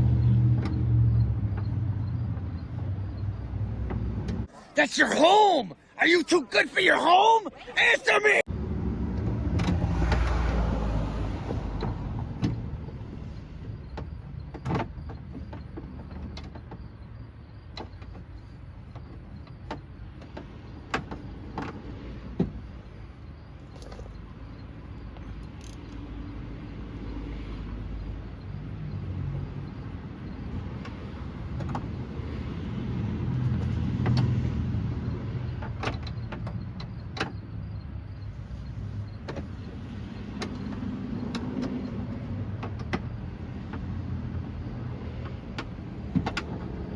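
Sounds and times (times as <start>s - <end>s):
ratchet clicking: 25.3s - 26.0s.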